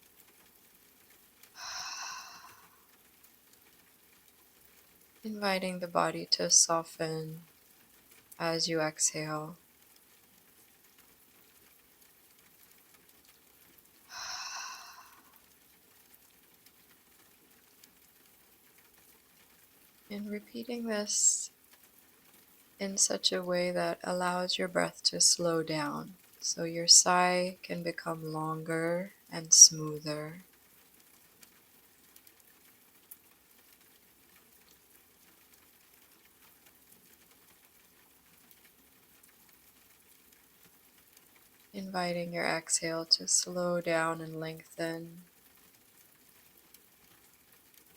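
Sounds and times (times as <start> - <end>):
rain hiss: 0.0 - 47.9
breathy sigh: 1.6 - 2.8, 14.1 - 15.3.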